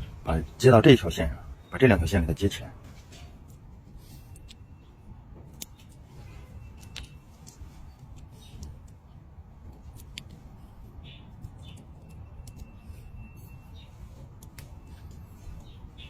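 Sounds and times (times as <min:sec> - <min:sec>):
wire clicking and scraping: 0:05.4 - 0:16.0.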